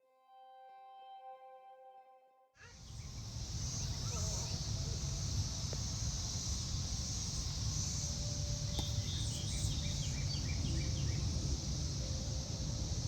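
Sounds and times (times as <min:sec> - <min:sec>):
cicada chorus drone: 0:02.6 - 0:13.0
bird chirping: 0:02.7 - 0:12.3.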